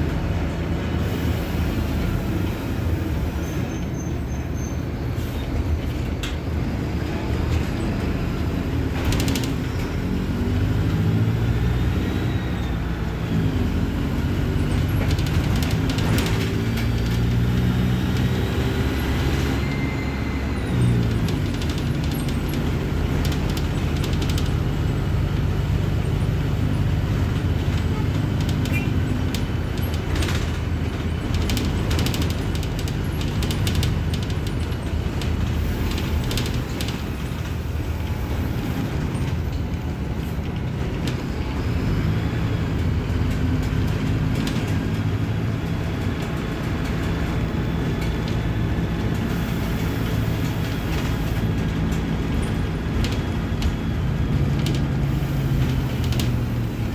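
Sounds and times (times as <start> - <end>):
bus diesel engine running: 0.0 - 56.9.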